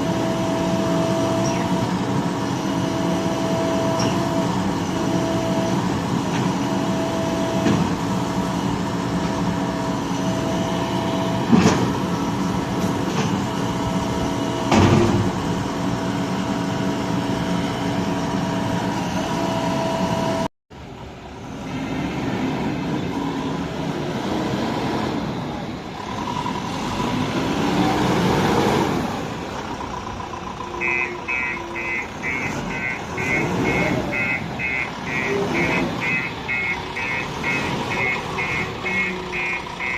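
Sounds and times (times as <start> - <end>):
diesel engine running: 0.0 - 39.9
rapid electronic beeping: 30.8 - 39.9.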